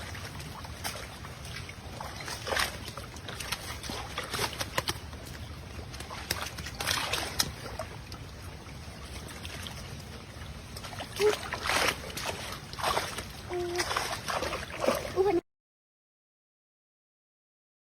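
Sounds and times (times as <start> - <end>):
water splashing: 0.0 - 15.4.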